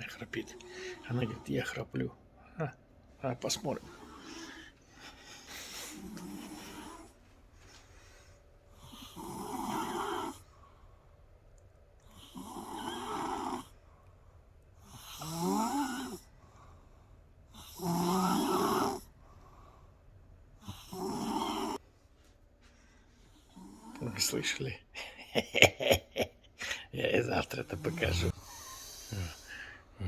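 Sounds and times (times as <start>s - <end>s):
woman snoring: 5.5s - 7.2s, 8.8s - 10.4s, 12.1s - 13.8s, 14.8s - 16.3s, 17.6s - 19.2s, 20.6s - 21.8s.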